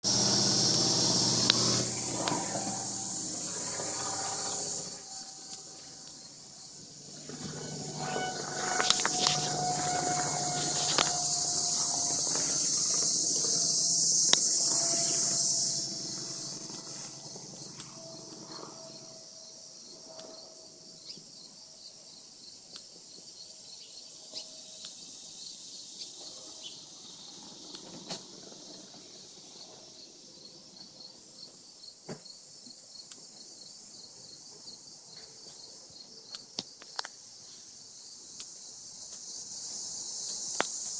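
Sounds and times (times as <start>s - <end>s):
plane howling whistle: 0.0s - 19.6s
plane engine: 0.0s - 20.9s
insects chirping: 0.0s - 40.9s.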